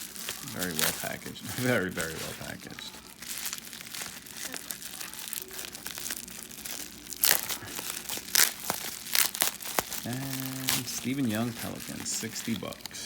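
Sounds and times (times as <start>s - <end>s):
plastic and paper crinkling: 0.0s - 13.0s.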